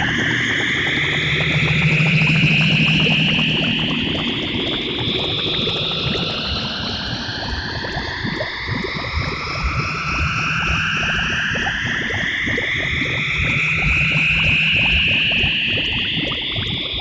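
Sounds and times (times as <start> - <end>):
crackling bubbling texture: 0.0 - 17.0.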